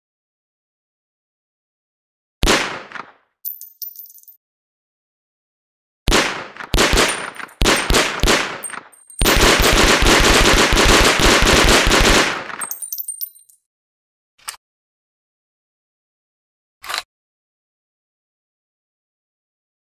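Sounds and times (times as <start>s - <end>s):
submachine gun firing: 2.4s - 3.1s, 6.1s - 12.7s
faint metallic clinks: 3.5s - 4.4s, 8.6s - 9.3s, 12.6s - 13.6s.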